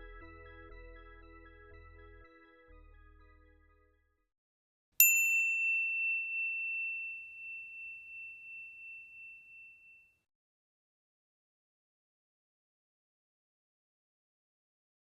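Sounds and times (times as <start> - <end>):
soft background music: 0.0 - 4.1
high bell ding: 5.0 - 10.2.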